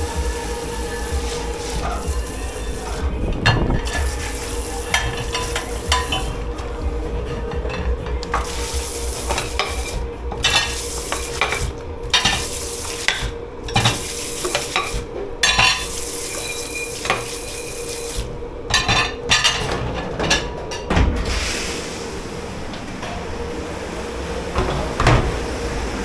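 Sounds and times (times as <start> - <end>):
water spraying onto dishes: 0.0 - 20.5
crockery and cutlery clinking: 0.0 - 21.1
steady machine hum: 0.0 - 26.0.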